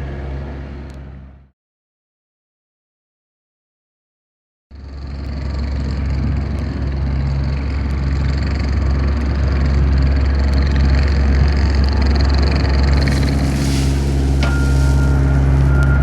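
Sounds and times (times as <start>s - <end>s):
skid steer engine running: 0.0s - 1.5s, 4.8s - 16.0s.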